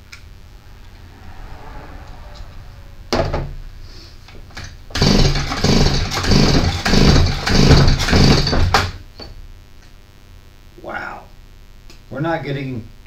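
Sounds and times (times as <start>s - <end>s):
engine cranking without firing: 4.2s - 8.5s
chainsaw recoil starter pulled: 5.0s - 8.9s.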